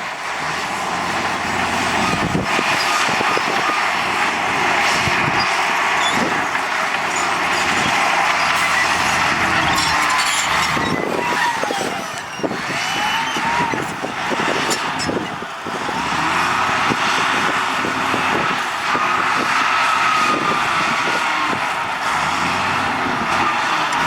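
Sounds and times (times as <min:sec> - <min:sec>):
diesel engine whining: 0:00.0 - 0:24.0
metallic clanks and knocks: 0:05.4 - 0:12.3.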